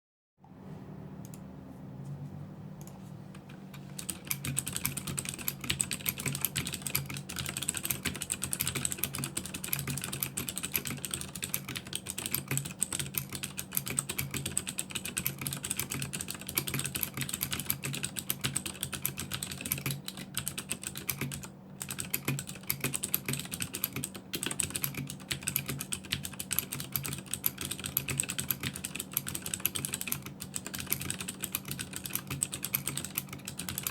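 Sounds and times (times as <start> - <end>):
mechanical keyboard typing: 3.3 - 33.9.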